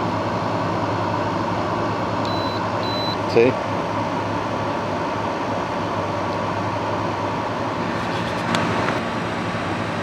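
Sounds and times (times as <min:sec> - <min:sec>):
dehumidifier humming: 0:00.0 - 0:10.0.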